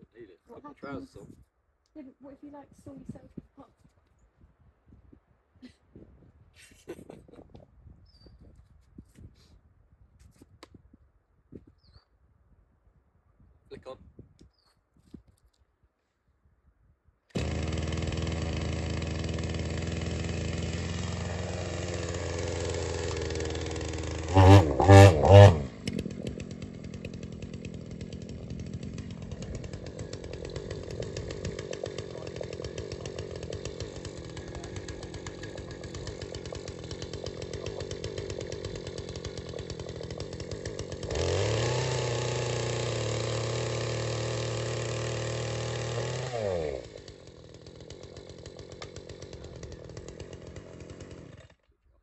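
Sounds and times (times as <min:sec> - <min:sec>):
chainsaw idling and revving: 0:17.3 - 0:51.8
steady rasp: 0:17.4 - 0:43.6.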